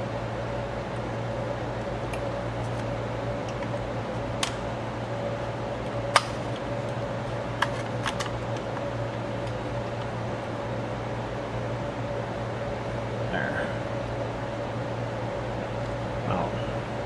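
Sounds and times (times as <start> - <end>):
steady background hum: 0.0 - 17.0
projector parts clicking and tapping: 5.8 - 10.1.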